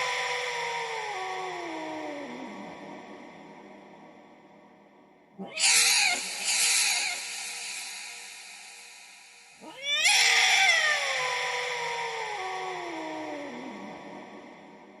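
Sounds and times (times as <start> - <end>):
cat meowing with reverb: 5.5 - 7.2.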